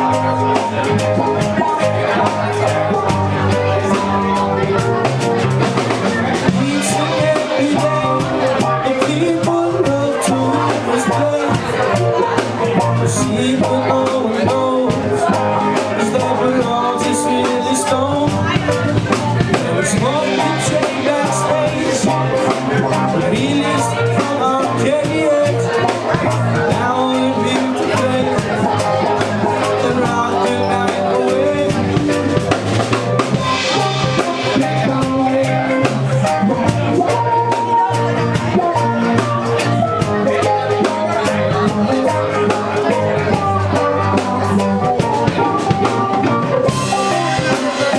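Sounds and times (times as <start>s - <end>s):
drum kit beat: 0.0s - 47.9s
rock band playing: 0.0s - 47.9s.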